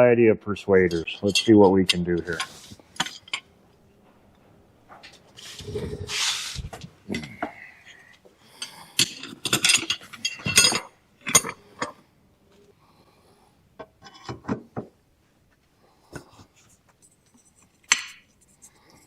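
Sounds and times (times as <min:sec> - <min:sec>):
metal hand tools clinking: 0:09.0 - 0:11.9.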